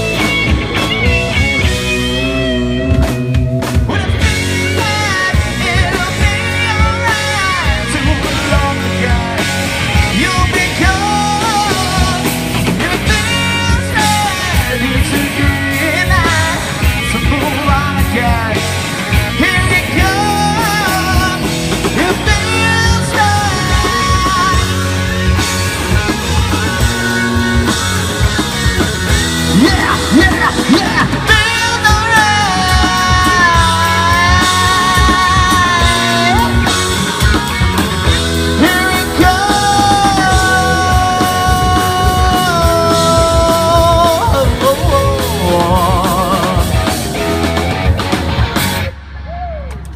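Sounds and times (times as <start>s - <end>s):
rock band playing live: 0.0s - 49.9s
bending sliding melody line: 19.3s - 49.0s.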